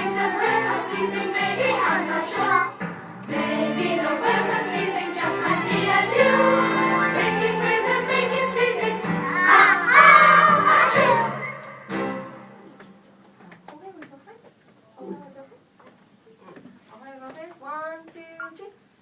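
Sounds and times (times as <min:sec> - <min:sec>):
children singing: 0:00.0 - 0:12.3
backing music: 0:00.0 - 0:13.1.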